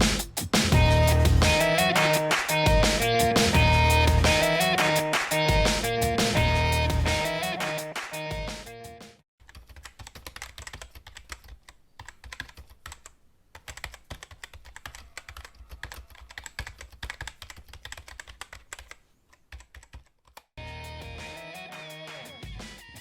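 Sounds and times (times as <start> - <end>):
rapid irregular clicking and tapping: 9.4 - 20.5.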